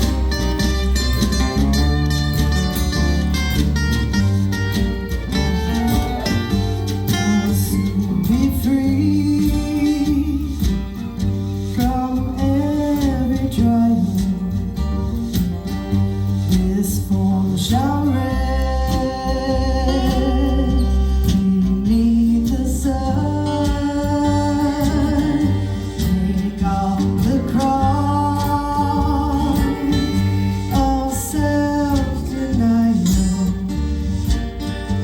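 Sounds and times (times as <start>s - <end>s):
acoustic guitar playing: 0.0s - 35.0s
person singing: 5.4s - 11.0s, 11.7s - 14.8s, 16.5s - 34.3s.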